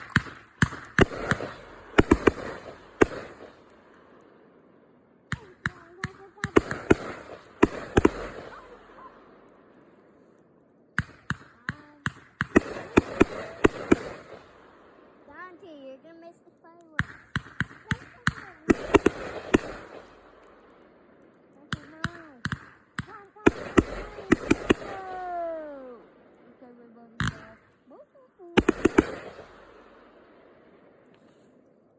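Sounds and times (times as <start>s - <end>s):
firework bangs: 0.0s - 15.9s, 17.0s - 27.8s, 28.5s - 31.6s.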